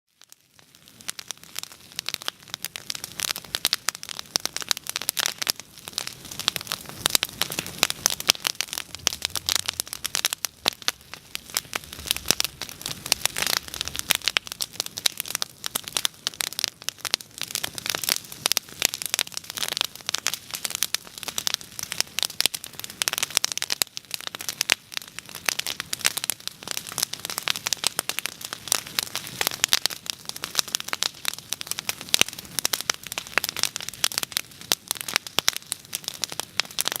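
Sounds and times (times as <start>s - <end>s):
bonfire crackling: 0.1s - 37.0s
hiss of flames: 4.5s - 16.6s.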